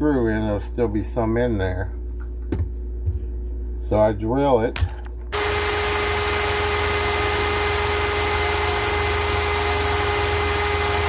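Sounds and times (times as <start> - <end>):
electric drill whining: 5.4 - 11.0.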